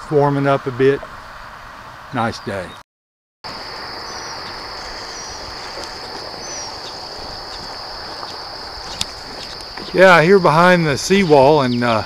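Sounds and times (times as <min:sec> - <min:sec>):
background hiss: 0:03.5 - 0:12.0
insects shrilling: 0:03.5 - 0:12.0
faint bird chirps: 0:04.0 - 0:10.1.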